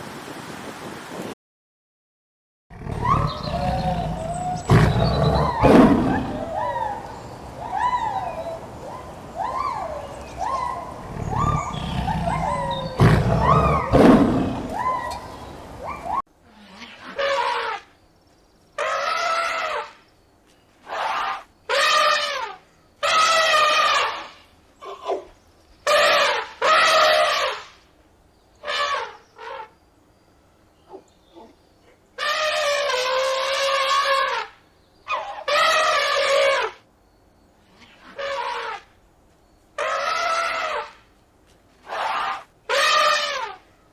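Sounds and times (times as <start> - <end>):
low rumbling growl: 2.7 - 6.7, 10.8 - 15.0
animal calling: 2.7 - 17.9, 18.8 - 20.0, 20.8 - 27.8, 30.8 - 36.8, 37.7 - 38.9, 39.8 - 41.0, 41.8 - 43.7.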